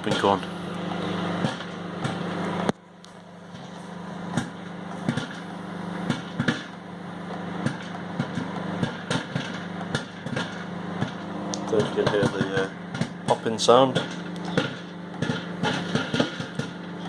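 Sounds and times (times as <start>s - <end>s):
microwave oven humming: 0.0s - 17.0s
popcorn kernels popping: 7.4s - 17.0s.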